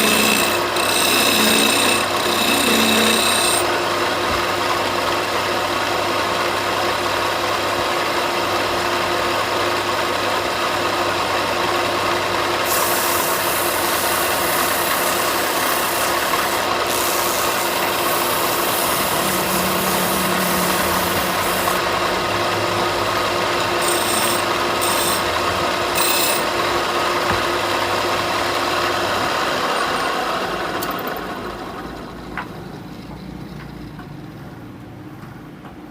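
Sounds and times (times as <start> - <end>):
power tool rasping on wood: 0.0 - 3.7, 12.7 - 21.8, 23.6 - 25.4, 26.0 - 26.5.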